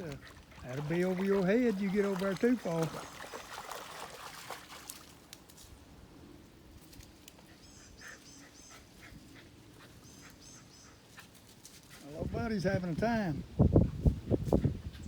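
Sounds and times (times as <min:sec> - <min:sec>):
creek water trickling: 0:00.0 - 0:06.0.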